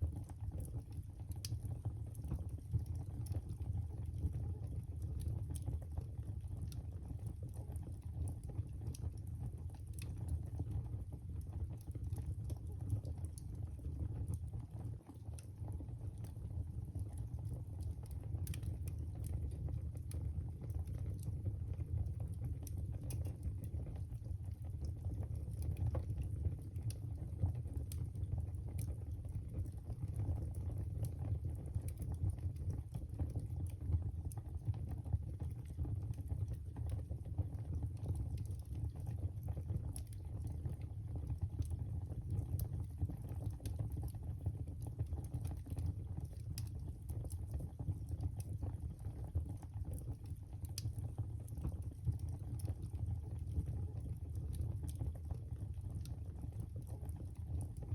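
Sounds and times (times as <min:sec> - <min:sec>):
fire crackling and popping: 0:00.0 - 0:57.9.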